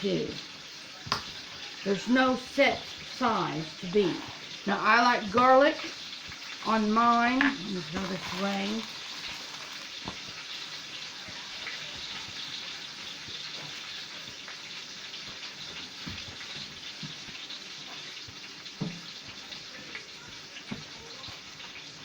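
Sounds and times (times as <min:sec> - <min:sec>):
meat sizzling in a skillet: 0:00.0 - 0:22.0
knife knocking on cutting board: 0:18.8 - 0:19.0.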